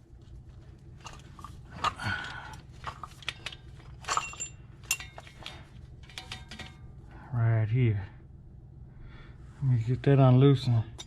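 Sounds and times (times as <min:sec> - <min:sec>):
hand tools clinking: 0:01.0 - 0:06.8.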